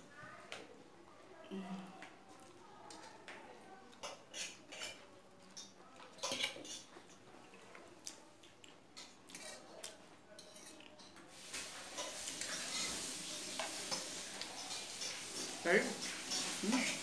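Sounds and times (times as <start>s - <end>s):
cutlery clinking on plates: 4.0s - 7.3s, 8.9s - 17.0s
steady hiss-like noise: 11.3s - 17.0s.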